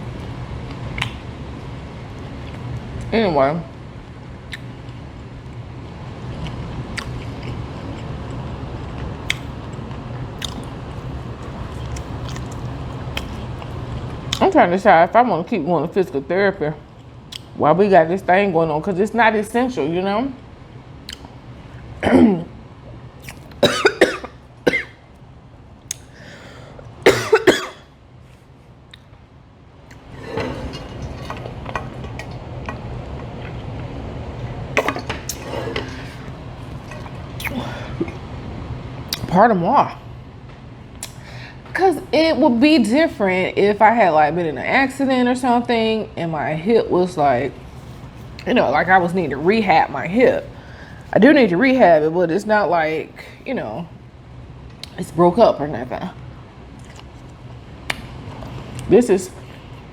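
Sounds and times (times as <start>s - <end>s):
person chewing food: 6.3s - 14.4s, 23.2s - 23.6s, 56.8s - 57.4s
wet mouth clicks and smacks: 21.0s - 21.3s
woman coughing: 22.0s - 22.5s, 23.6s - 25.0s, 27.0s - 27.9s.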